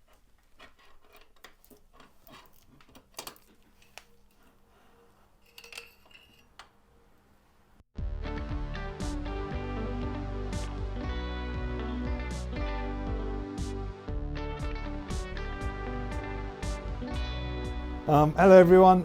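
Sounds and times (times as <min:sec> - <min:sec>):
music: 0:08.0 - 0:19.0.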